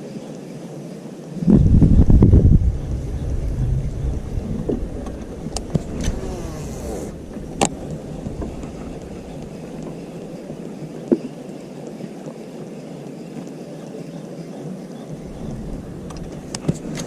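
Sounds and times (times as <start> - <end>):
wind buffeting microphone: 1.3 - 11.2, 15.1 - 17.0.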